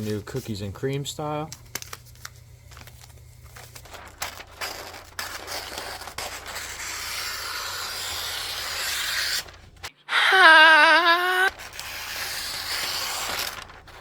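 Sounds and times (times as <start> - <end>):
paper crinkling: 0.0 - 9.9, 11.5 - 14.0
paper tearing rustle: 1.5 - 9.9, 11.5 - 14.0.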